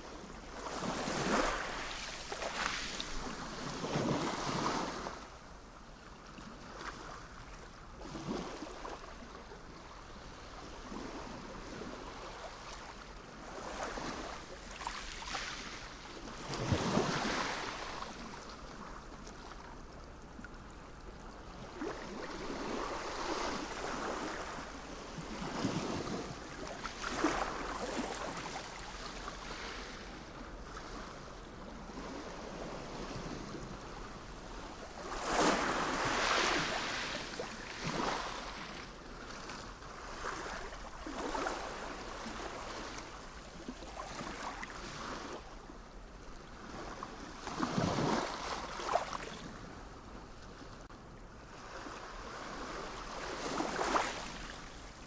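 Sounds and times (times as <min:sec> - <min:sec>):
sea waves breaking: 0:00.7 - 0:05.2, 0:13.4 - 0:18.4, 0:21.7 - 0:31.2, 0:31.8 - 0:45.5, 0:51.6 - 0:55.0.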